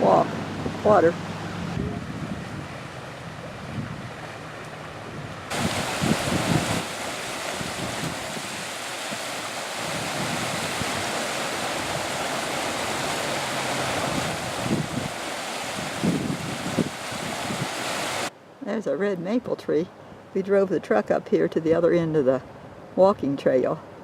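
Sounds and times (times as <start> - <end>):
wind bumps on microphone: 0.0 - 4.3, 5.0 - 18.3
river rushing: 0.0 - 18.3.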